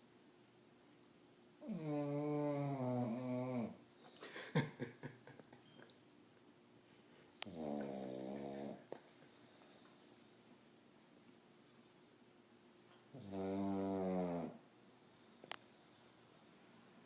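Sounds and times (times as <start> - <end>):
pet snoring: 1.6 - 3.8, 7.4 - 8.8, 13.1 - 14.6.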